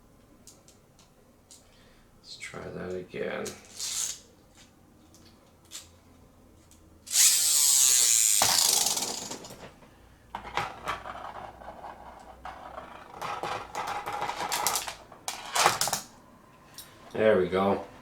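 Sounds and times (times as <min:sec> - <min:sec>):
ripcord ratcheting whirr: 0:03.6 - 0:04.3, 0:07.0 - 0:09.6.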